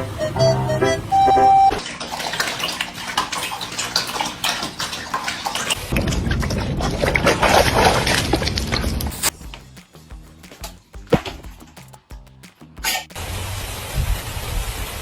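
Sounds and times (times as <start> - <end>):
dog lapping water: 1.8 - 9.2.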